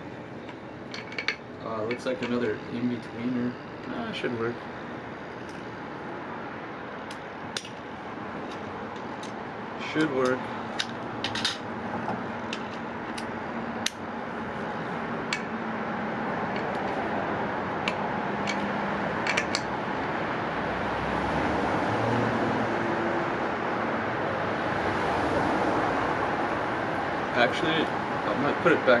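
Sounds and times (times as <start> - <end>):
steady background hum: 0.0 - 29.0.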